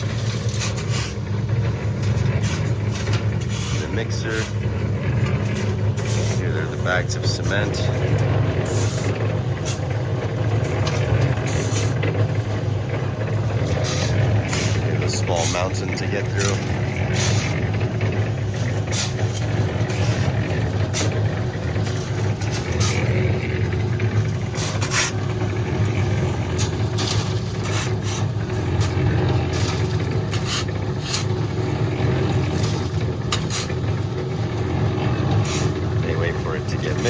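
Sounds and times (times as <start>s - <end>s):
cement mixer humming: 0.0s - 37.0s
knocks and scrapes: 0.0s - 37.0s.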